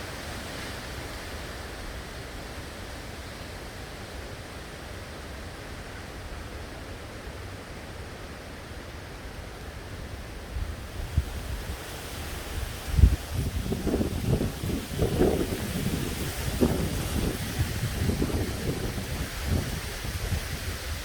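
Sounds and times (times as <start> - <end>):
heavy rain and wind hiss: 0.0 - 21.0
wind buffeting microphone: 10.6 - 21.0.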